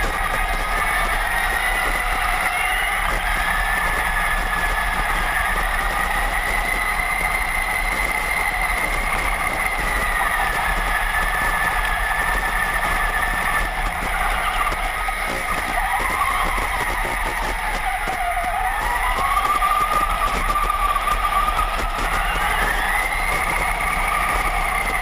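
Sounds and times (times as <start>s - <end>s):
rc truck electric motor whining: 0.0s - 25.0s.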